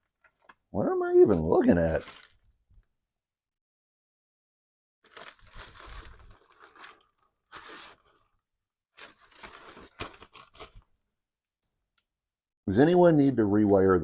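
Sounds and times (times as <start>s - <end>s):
parts rustling and crinkling: 0.0s - 2.9s, 5.0s - 11.0s.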